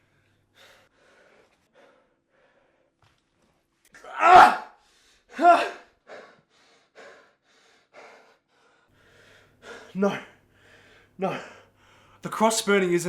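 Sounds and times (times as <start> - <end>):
person breathing: 6.1 - 12.2.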